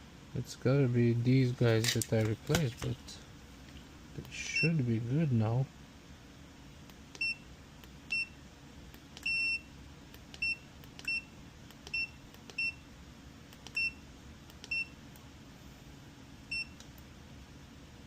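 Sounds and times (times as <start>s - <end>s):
multimeter continuity beeps: 7.1s - 7.5s, 8.1s - 8.4s, 9.2s - 9.8s, 10.4s - 12.9s, 13.6s - 15.0s, 16.5s - 16.9s.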